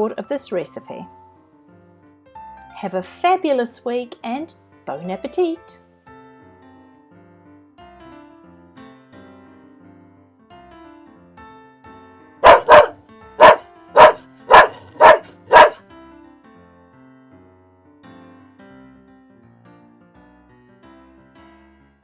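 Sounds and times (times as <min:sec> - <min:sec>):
dog barking: 0:12.4 - 0:15.8.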